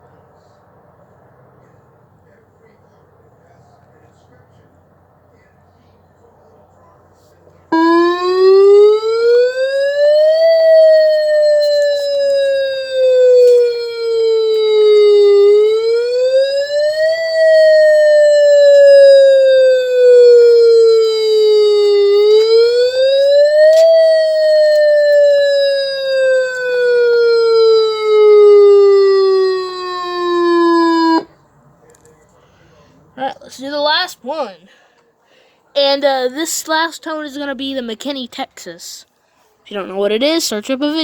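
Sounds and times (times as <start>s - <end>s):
sweeping warning siren: 7.7s - 31.4s.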